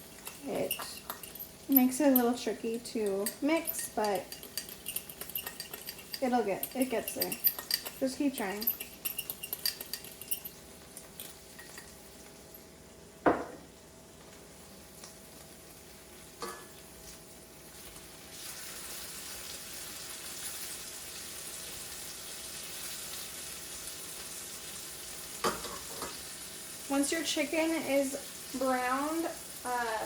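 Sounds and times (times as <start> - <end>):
utensil clinking against bowl: 0.1 - 12.0
chicken sizzling in hot pan: 14.6 - 30.0.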